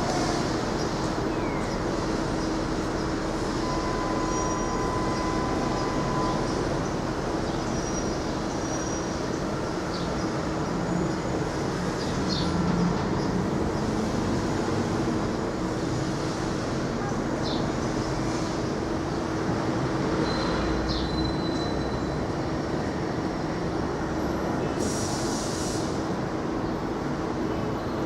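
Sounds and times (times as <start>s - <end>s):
subway train rolling rumble: 0.0s - 28.0s
high squeals: 3.5s - 7.0s.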